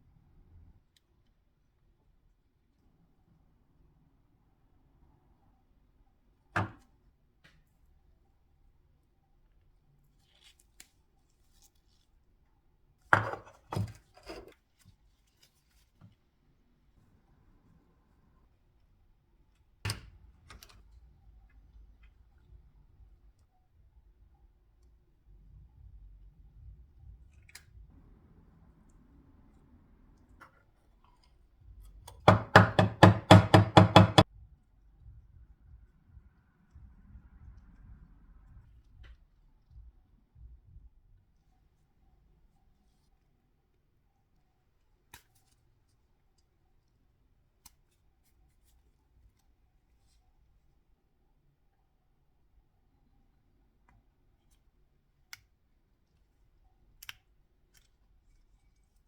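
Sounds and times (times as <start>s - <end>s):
scraping knocks on workbench: 13.2s - 14.5s, 32.3s - 34.2s.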